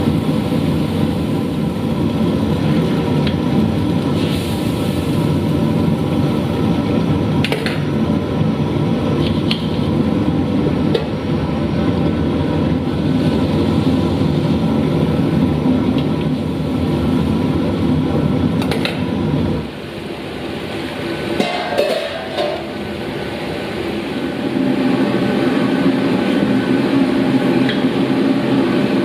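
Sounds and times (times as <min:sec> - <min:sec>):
noodles frying: 0:00.0 - 0:29.0
stove burner roar: 0:00.0 - 0:29.0.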